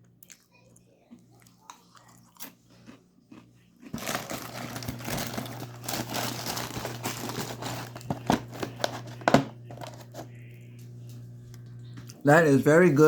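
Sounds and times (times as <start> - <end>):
plastic snack bag crinkling: 2.4 - 10.4.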